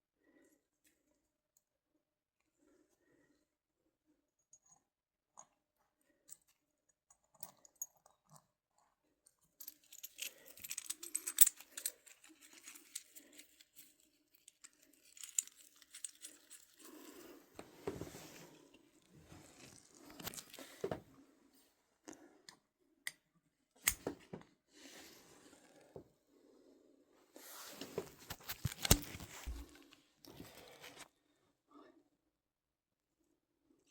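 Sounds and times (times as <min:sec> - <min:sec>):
crinkling and rattling: 0:09.6 - 0:21.1, 0:27.4 - 0:31.1.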